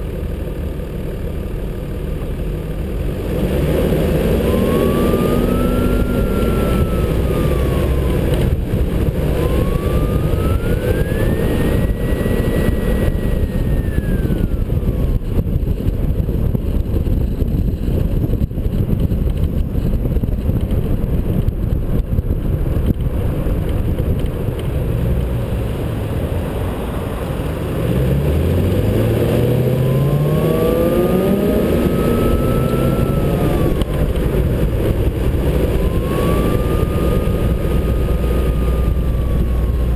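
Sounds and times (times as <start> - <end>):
car engine: 0.0 - 39.9
road and wind rumble: 0.0 - 39.9
faint whine: 1.4 - 18.5, 29.6 - 39.9.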